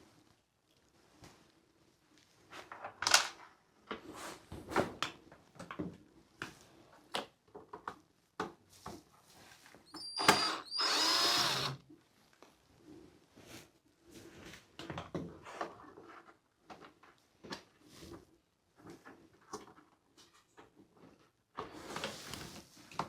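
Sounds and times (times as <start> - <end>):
cordless drill running: 10.0 - 11.8.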